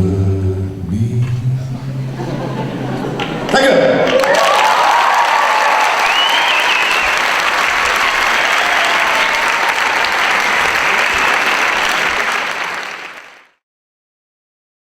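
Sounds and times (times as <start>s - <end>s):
audience applauding: 2.2s - 13.6s.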